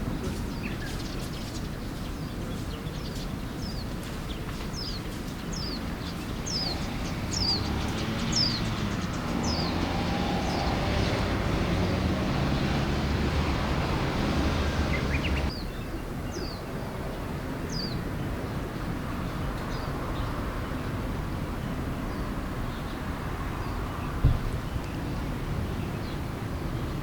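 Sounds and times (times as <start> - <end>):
low rumble of engine or traffic: 0.0 - 27.0
bird chirping: 0.1 - 16.6.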